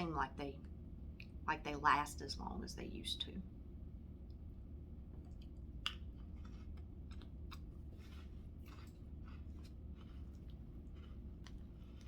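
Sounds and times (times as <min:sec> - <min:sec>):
faint low hum: 0:00.0 - 0:12.0
crackers crunching: 0:05.2 - 0:12.0.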